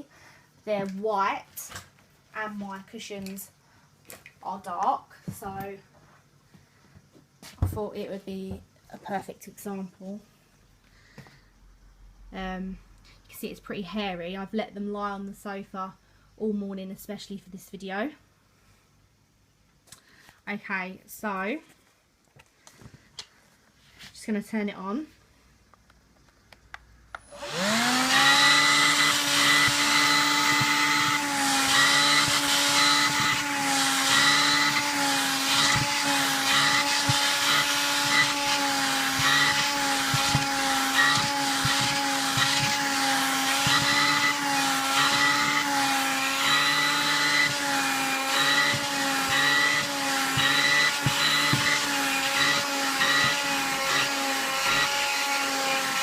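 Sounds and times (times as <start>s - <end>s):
handheld vacuum cleaner whining: 27.2s - 56.0s.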